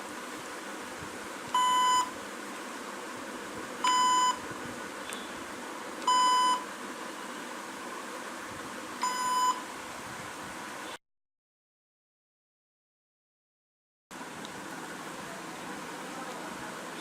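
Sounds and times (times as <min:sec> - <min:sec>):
laptop short beeps: 0:01.6 - 0:02.1, 0:03.8 - 0:04.4, 0:06.1 - 0:06.6, 0:09.0 - 0:09.6.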